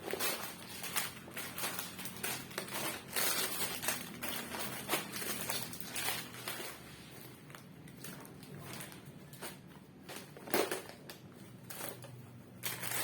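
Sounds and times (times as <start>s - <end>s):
rustling and crinkling handling: 0.0s - 13.0s.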